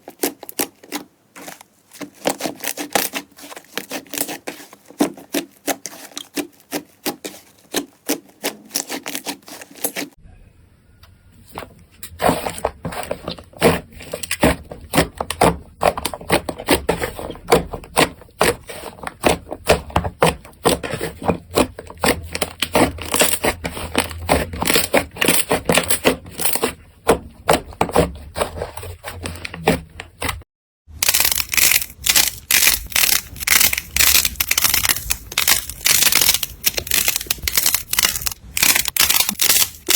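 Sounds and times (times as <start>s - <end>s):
slime squeezed by hand crackling: 31.0s - 39.9s.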